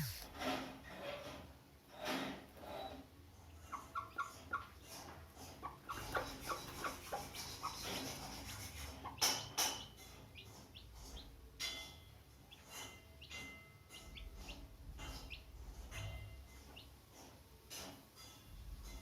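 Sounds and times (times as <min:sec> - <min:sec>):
chicks peeping: 0:03.6 - 0:04.9, 0:05.5 - 0:11.4, 0:12.4 - 0:15.5.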